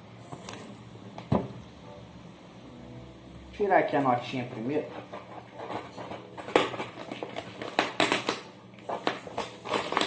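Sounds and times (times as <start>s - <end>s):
packaging rustling and crinkling: 5.1s - 10.0s.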